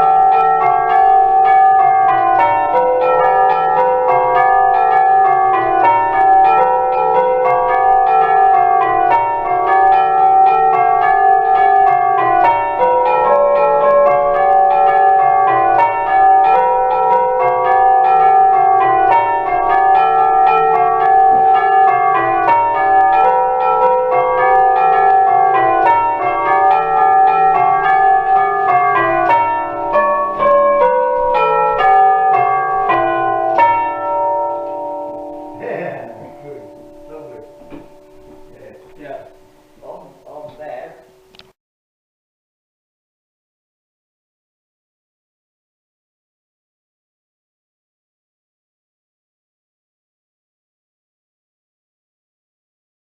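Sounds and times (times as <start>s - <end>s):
tubular bells ringing: 0.0s - 41.0s.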